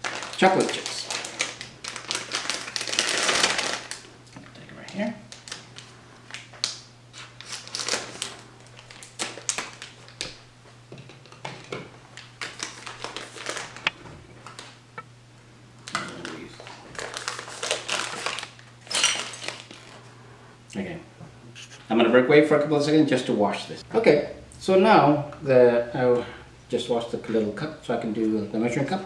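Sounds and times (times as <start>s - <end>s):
plastic packaging rustling: 0.0s - 14.8s, 15.8s - 20.1s.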